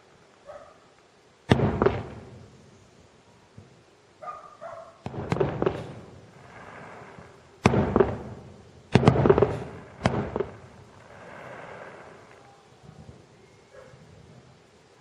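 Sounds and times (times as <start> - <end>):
distant fireworks bursting: 1.4 - 13.4.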